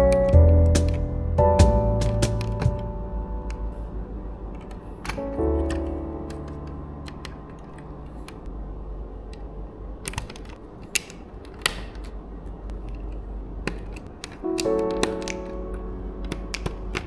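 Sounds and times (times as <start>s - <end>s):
plastic parts clicking and rattling: 10.1s - 12.2s.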